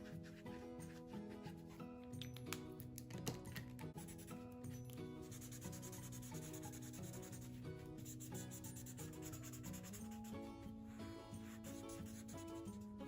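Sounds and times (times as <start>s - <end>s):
drawing strokes on paper: 0.0s - 1.9s, 5.2s - 13.0s
background music melody: 0.0s - 13.0s.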